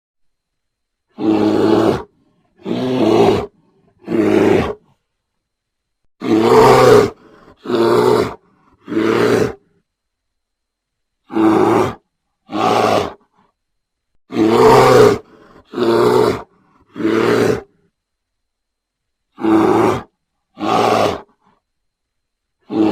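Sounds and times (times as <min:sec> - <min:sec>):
bear roars: 0:01.1 - 0:05.0, 0:06.2 - 0:09.8, 0:11.2 - 0:13.4, 0:14.3 - 0:17.9, 0:19.3 - 0:21.6, 0:22.6 - 0:22.9.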